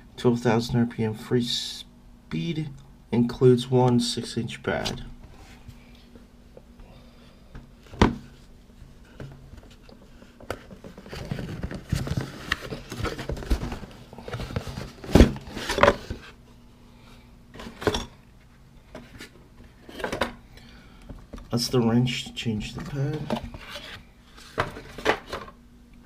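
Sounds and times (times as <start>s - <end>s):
packaging rustling: 10.5s - 16.3s.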